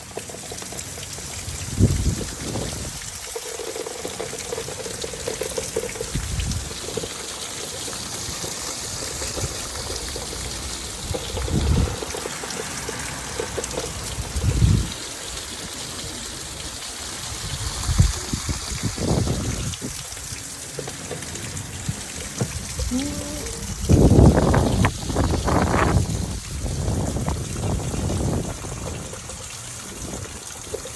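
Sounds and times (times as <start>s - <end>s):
heavy rain falling: 0.0s - 30.9s
water pouring and trickling: 0.0s - 30.9s
wind gusting against microphone: 1.6s - 3.2s, 6.1s - 6.8s, 10.9s - 12.1s, 13.9s - 15.1s, 16.1s - 20.2s, 21.8s - 30.5s.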